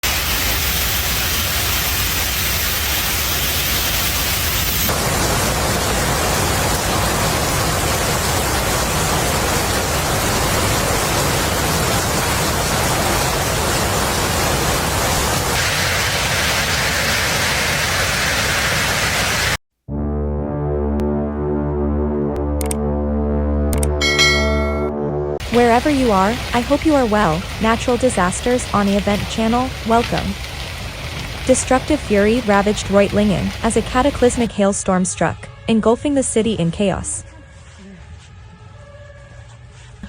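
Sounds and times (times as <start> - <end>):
hail and rain pelting down: 0.0 - 19.6, 25.4 - 34.5
music: 19.9 - 25.7, 34.8 - 40.0.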